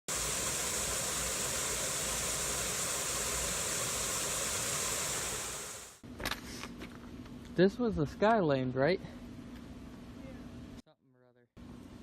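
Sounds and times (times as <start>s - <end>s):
steady hiss: 0.1s - 6.0s.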